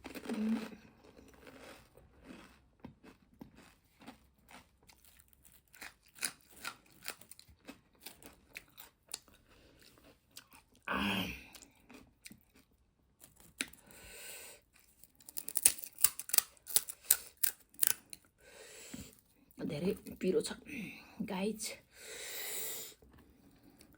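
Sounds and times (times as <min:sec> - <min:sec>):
crunching crisp fried shells: 0:00.0 - 0:14.0, 0:14.7 - 0:18.3.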